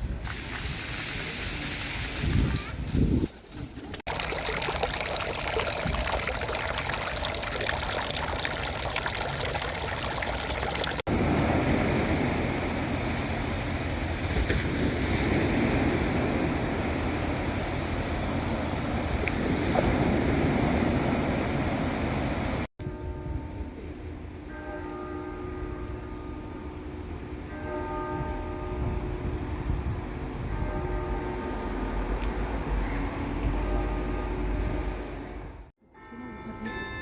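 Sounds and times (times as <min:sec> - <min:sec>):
water running and splashing: 0:04.0 - 0:11.1.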